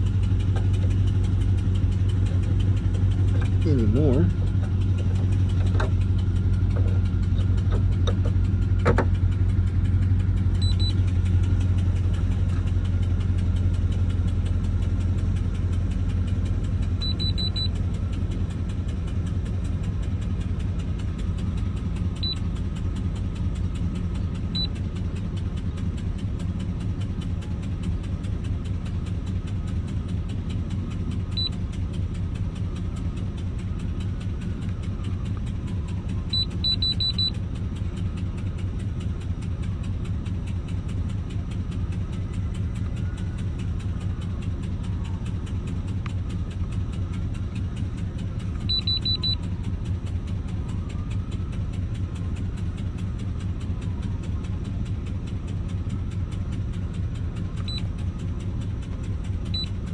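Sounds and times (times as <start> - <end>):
engine idling with ticking: 0.0 - 59.9
short high beeps: 48.7 - 49.4.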